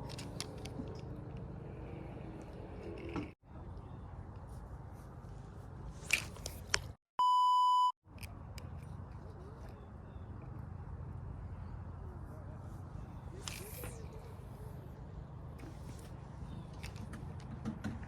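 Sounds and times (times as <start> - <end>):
electronic beep: 7.2 - 8.0.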